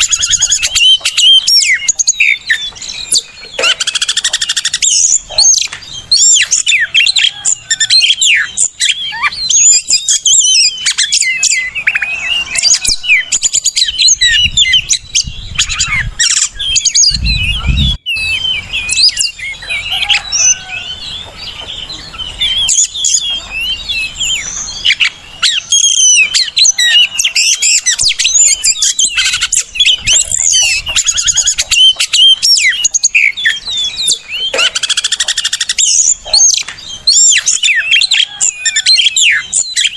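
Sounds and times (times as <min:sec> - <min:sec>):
songbird singing: 0:00.0 - 0:39.9
short low rumble: 0:17.1 - 0:18.0.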